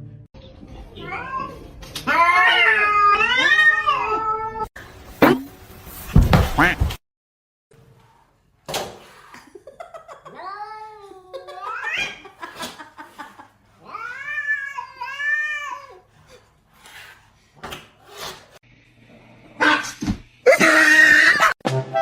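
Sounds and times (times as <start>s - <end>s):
cat yowling: 1.0s - 4.7s.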